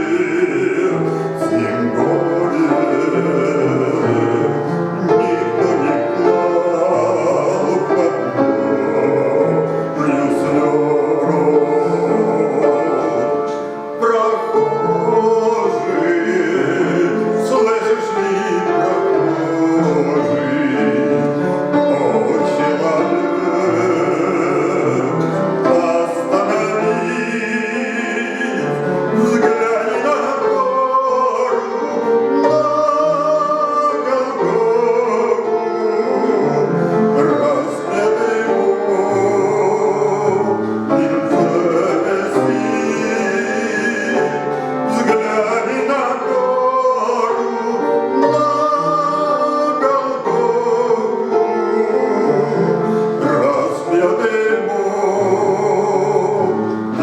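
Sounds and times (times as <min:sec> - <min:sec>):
hymn with instruments and singing: 0:00.0 - 0:57.0.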